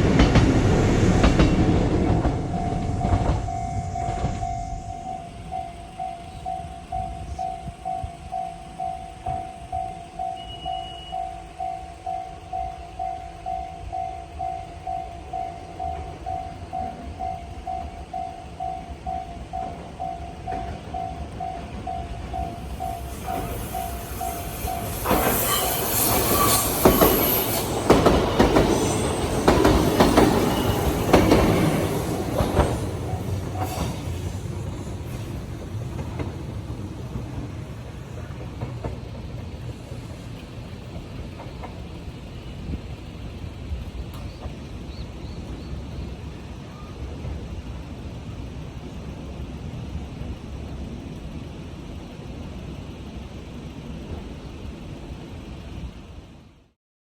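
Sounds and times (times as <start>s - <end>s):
wheels clacking over rail joints: 0.0s - 48.2s
train passing over crossing: 0.0s - 56.8s
level crossing bell ringing: 2.5s - 23.0s
brief high squeal: 23.0s - 27.8s.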